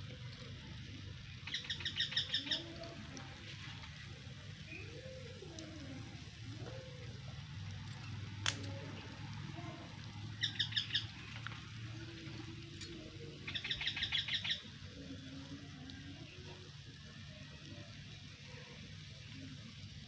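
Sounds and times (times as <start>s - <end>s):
bird chirping: 0.3s - 2.8s, 10.3s - 14.7s
sharp click: 8.4s - 8.8s.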